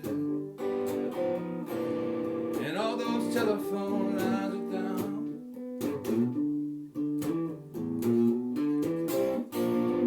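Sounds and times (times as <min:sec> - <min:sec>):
blues guitar playing: 0:00.0 - 0:10.0
person singing: 0:02.5 - 0:05.4.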